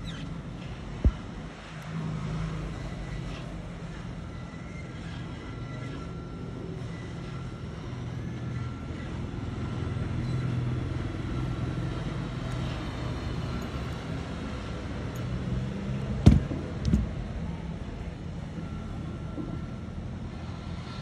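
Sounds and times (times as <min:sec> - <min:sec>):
low mechanical hum: 0:00.0 - 0:21.0
sharp knocks: 0:16.2 - 0:17.2.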